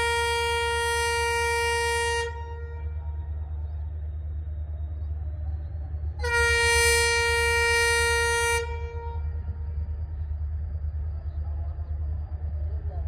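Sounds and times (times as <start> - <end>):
locomotive horn blast: 0.0 - 3.0, 6.2 - 9.4
low rumble of train: 0.0 - 13.0.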